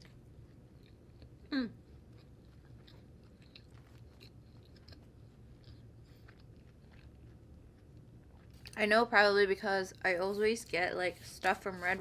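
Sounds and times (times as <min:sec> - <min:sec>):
faint chewing: 0:00.0 - 0:08.9
low steady hum: 0:00.0 - 0:12.0.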